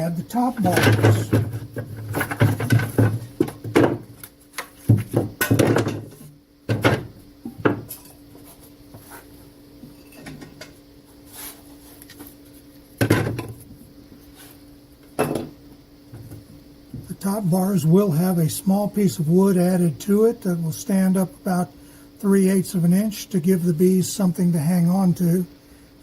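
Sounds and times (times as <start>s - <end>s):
wooden frame parts knocking: 0.6s - 7.9s.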